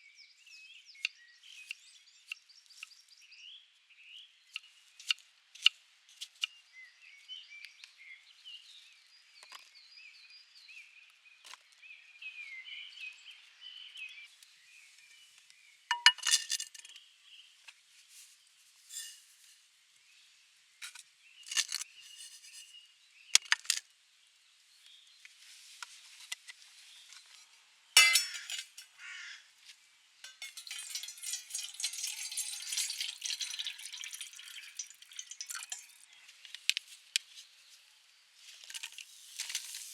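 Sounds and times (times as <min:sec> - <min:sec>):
clinks of small hard objects: 0:15.9 - 0:16.9, 0:21.5 - 0:21.8, 0:28.0 - 0:28.9, 0:30.2 - 0:36.2, 0:38.6 - 0:39.9
birds singing: 0:30.3 - 0:36.4.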